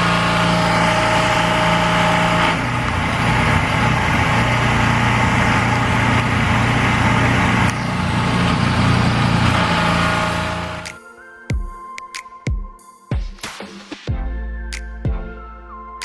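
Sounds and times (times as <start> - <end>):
engine idling: 0.0 - 10.9.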